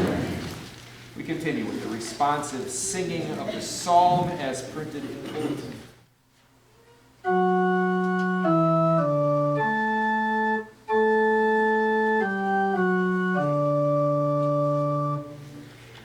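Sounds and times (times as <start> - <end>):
church organ chords: 7.2 - 15.7.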